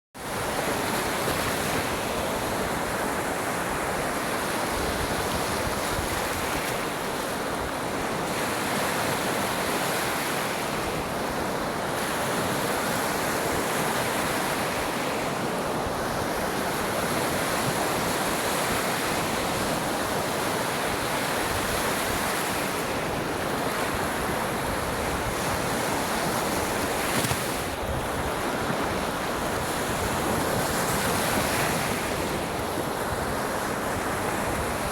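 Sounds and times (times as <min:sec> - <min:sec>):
waves washing onto beach: 0:00.2 - 0:34.9.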